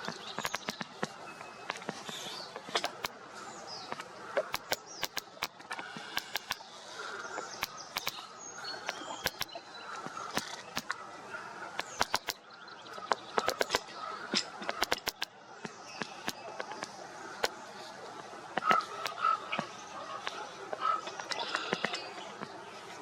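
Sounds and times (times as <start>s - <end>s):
sharp irregular clicks: 0.0s - 3.2s, 3.9s - 9.6s, 10.2s - 11.0s, 11.7s - 15.4s, 18.6s - 22.5s
small birds chirping: 0.0s - 23.0s.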